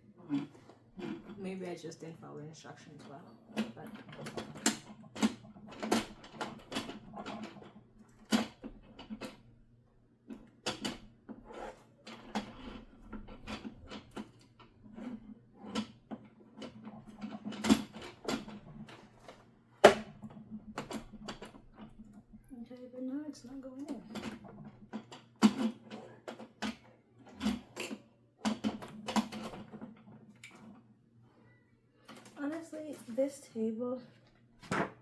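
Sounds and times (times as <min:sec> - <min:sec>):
sewing machine table clicks and knocks: 0:03.0 - 0:09.5, 0:10.3 - 0:22.5, 0:23.5 - 0:30.9.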